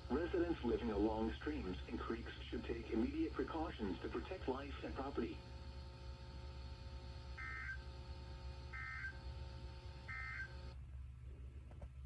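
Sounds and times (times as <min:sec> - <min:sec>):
radio hiss: 0:00.0 - 0:10.8
steady low hum: 0:00.0 - 0:12.0
two-tone digital data bursts: 0:07.4 - 0:07.9, 0:08.7 - 0:09.3, 0:10.1 - 0:10.6.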